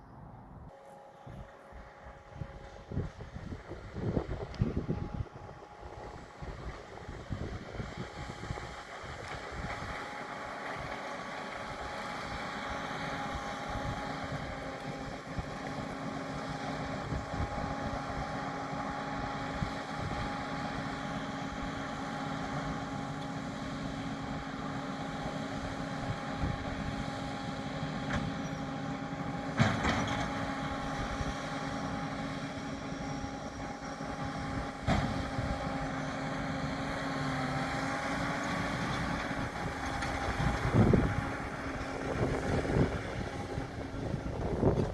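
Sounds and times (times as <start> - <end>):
baler machine whine: 0.0 - 27.1, 28.1 - 44.9
tractor running: 0.0 - 44.9
wind on microphone: 1.3 - 9.9, 39.4 - 44.9.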